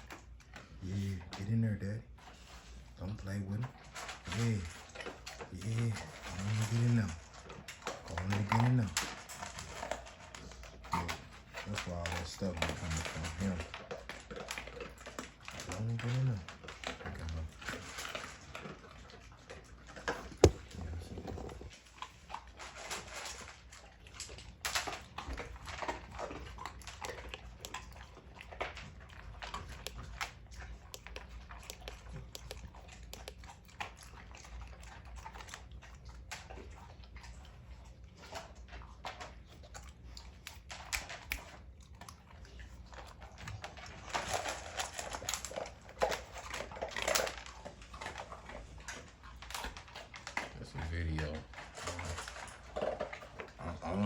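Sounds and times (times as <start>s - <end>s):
dogs crunching and chewing: 0.0s - 54.0s
steady low hum: 20.1s - 21.8s.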